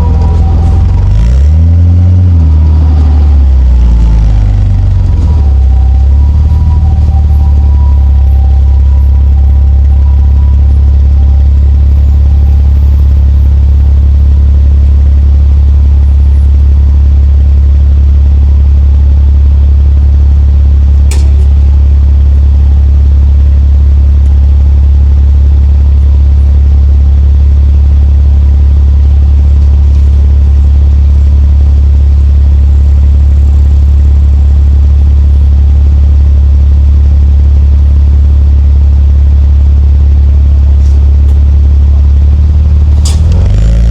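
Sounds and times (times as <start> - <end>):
car engine droning: 0.0 - 43.9
sharp click: 21.1 - 21.5.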